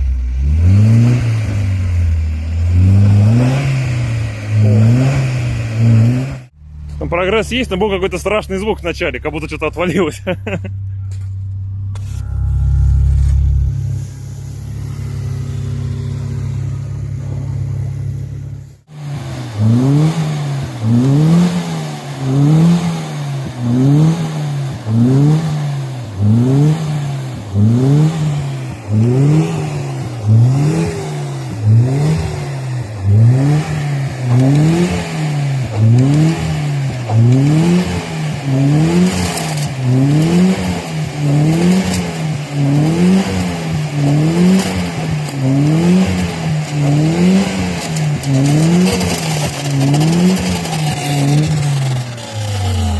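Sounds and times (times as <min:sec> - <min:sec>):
engine revving up and down: 0:00.0 - 0:06.6, 0:09.9 - 0:52.9.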